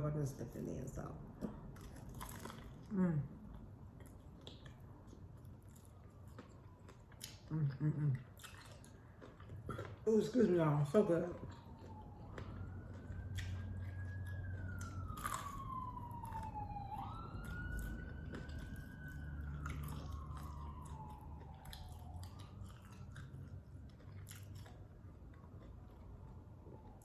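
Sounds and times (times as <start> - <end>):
chewing and crunching food: 1.2 - 27.0
siren wailing: 9.3 - 27.0.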